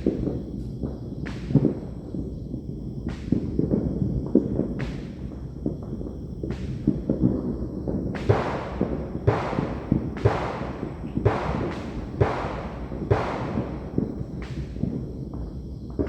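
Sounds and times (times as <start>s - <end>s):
firecracker cracks: 0.0s - 0.6s, 1.2s - 2.0s, 3.1s - 3.8s, 4.4s - 5.5s, 6.5s - 15.1s
fireworks booming: 0.0s - 16.0s.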